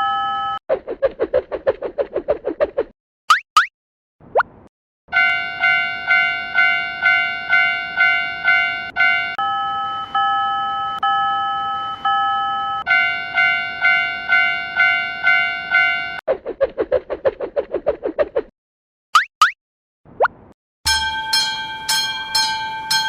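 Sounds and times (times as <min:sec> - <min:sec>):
crossing bell with held tones: 0:00.0 - 0:00.6, 0:05.2 - 0:16.2, 0:20.9 - 0:23.0
railroad crossing bell ringing: 0:00.0 - 0:00.6, 0:05.1 - 0:16.2, 0:20.9 - 0:23.0.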